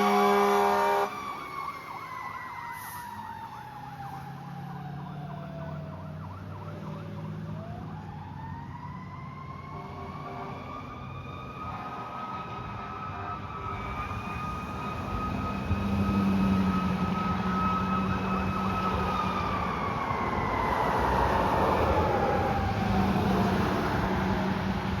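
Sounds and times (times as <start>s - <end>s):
passing truck noise: 0.0s - 3.5s, 9.7s - 25.0s
fire engine siren wailing: 0.0s - 25.0s.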